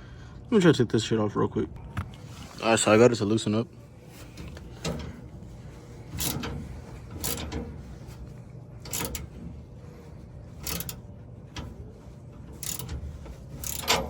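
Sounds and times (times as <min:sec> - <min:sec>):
ratchet wrench clicking: 0:06.1 - 0:06.6, 0:07.2 - 0:07.6, 0:08.8 - 0:09.3, 0:10.6 - 0:11.1, 0:12.5 - 0:14.0.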